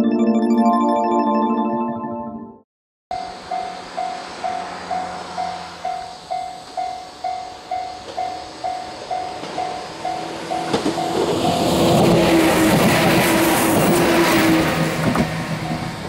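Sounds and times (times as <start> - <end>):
level crossing warning bell: 3.1 - 11.9, 15.5 - 16.0
train rumble: 3.2 - 16.0.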